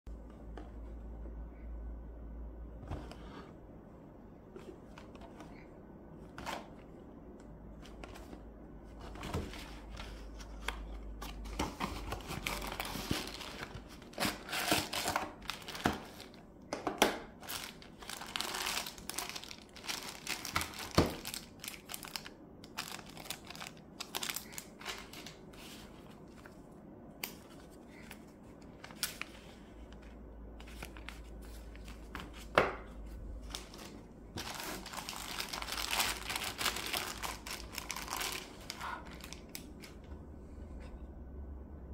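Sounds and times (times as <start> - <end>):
plastic and cardboard crinkling: 7.8 - 16.4, 17.3 - 26.6, 27.3 - 40.1.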